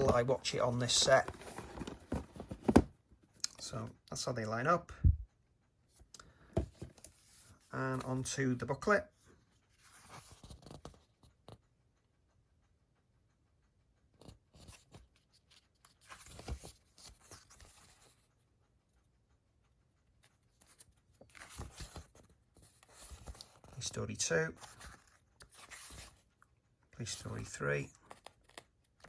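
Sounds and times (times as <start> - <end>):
paper pages turning: 0.0 - 2.8, 14.2 - 18.2, 20.6 - 24.0, 24.6 - 26.2, 27.1 - 29.0.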